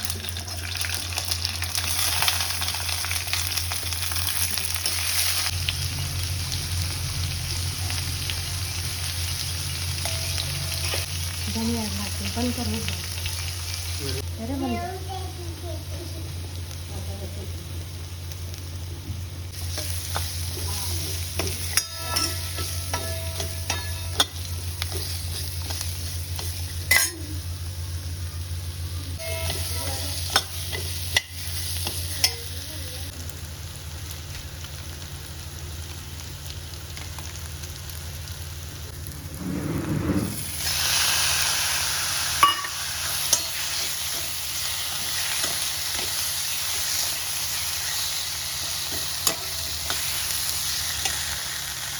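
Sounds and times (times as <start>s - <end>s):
food sizzling in a pan: 0.0s - 51.9s
steady low hum: 5.5s - 33.6s
metal spoon clinking against pan: 10.0s - 11.0s, 21.3s - 25.8s, 26.4s - 27.3s, 42.4s - 43.6s.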